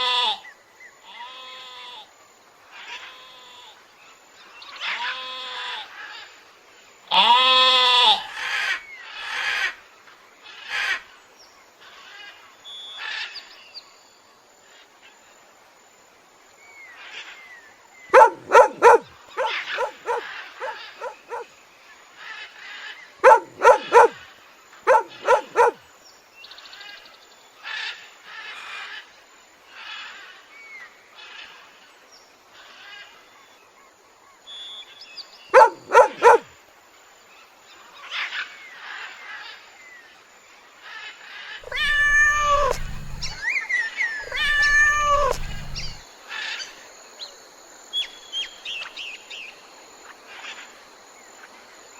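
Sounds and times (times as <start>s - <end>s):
long loud animal calls: 0.0s - 0.4s, 7.1s - 9.7s, 18.1s - 21.5s, 23.2s - 24.2s, 24.9s - 25.8s, 35.6s - 36.5s, 41.6s - 43.5s, 44.2s - 46.0s
soft chirping: 18.2s - 21.4s, 23.2s - 24.2s, 24.9s - 25.8s, 35.6s - 36.4s, 41.6s - 43.4s, 44.2s - 46.0s
short sharp animal calls: 18.2s - 21.5s, 23.2s - 24.2s, 24.9s - 25.8s, 35.6s - 36.4s, 41.6s - 43.4s, 44.2s - 46.0s.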